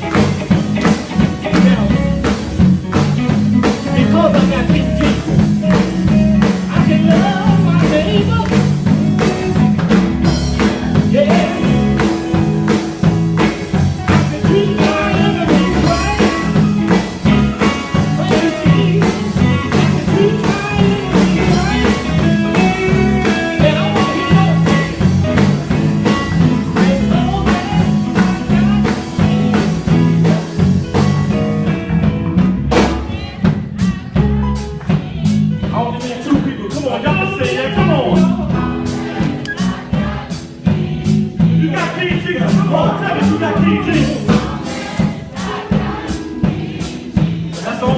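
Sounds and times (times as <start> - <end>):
gospel band playing: 0.0 - 47.9
group singing: 10.2 - 30.8, 32.8 - 36.4, 37.0 - 47.9.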